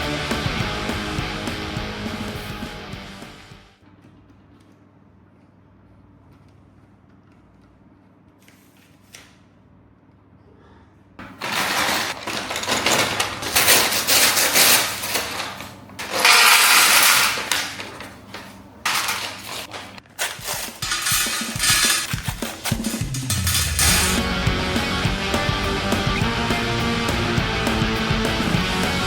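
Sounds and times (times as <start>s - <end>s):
plastic packaging crinkling and rattling: 11.2s - 24.2s.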